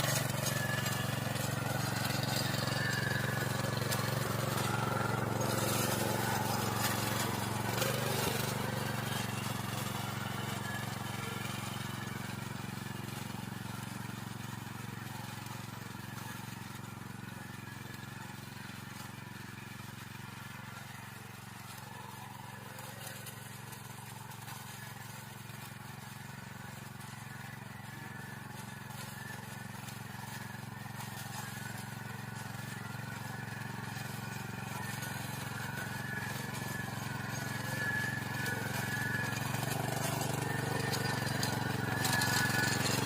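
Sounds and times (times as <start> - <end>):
cultivator engine running: 0.0 - 43.0
tines clattering on stones: 33.9 - 43.0.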